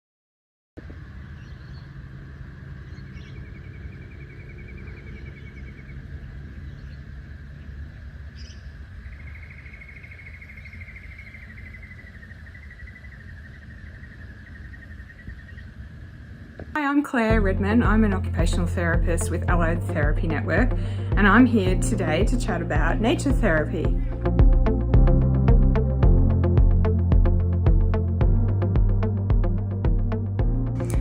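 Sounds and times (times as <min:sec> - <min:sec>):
bird trills: 0:01.2 - 0:16.0
high bird chirps: 0:08.4 - 0:15.7
low rumble: 0:16.0 - 0:31.0.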